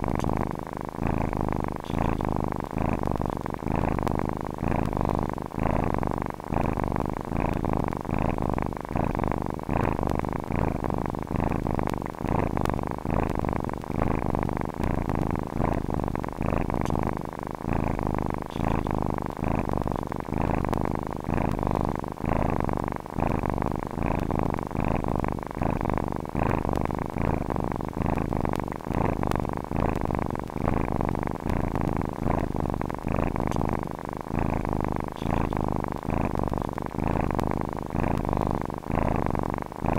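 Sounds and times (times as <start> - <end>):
cat purring: 0.0 - 39.9.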